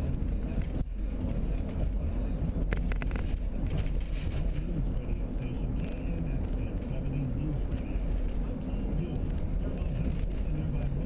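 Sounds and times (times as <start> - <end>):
car interior rumble: 0.0 - 11.0.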